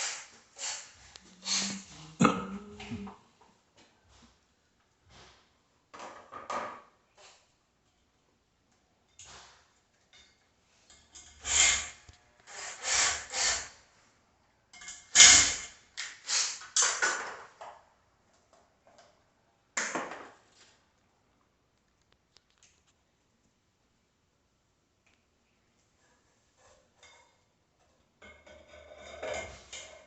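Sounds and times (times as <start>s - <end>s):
short scraping and rubbing: 0.0s - 3.1s, 11.2s - 13.8s.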